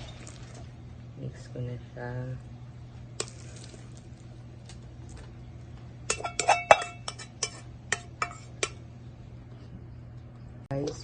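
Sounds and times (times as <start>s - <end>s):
utensil clinking against metal pot: 6.1s - 8.8s.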